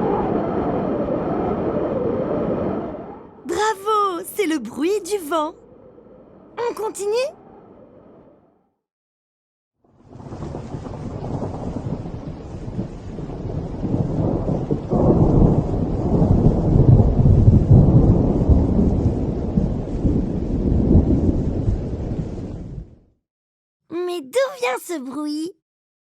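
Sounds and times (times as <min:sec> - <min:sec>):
thunder clap: 0:00.0 - 0:03.7, 0:10.0 - 0:22.9
thunder rumbling: 0:00.0 - 0:08.3, 0:10.0 - 0:23.0.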